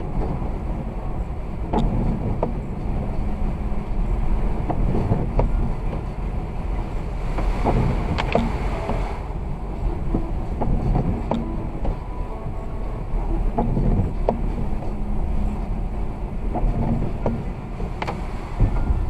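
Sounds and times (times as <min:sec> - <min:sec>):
road and tyre noise: 0:00.0 - 0:19.0.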